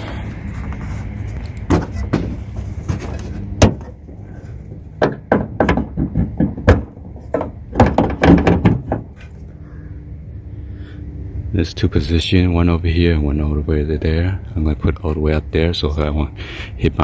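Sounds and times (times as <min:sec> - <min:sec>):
car hood latch and prop rod clunks: 0:01.6 - 0:04.1.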